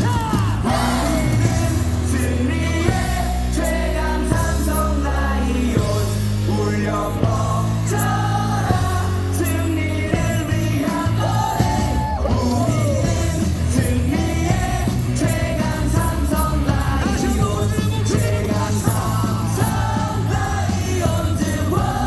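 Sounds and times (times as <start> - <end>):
crowd shouts: 0.0 - 2.0, 11.3 - 13.0
amplified cheer music with heavy bass: 0.0 - 22.0
stadium crowd singing in unison: 0.0 - 22.0.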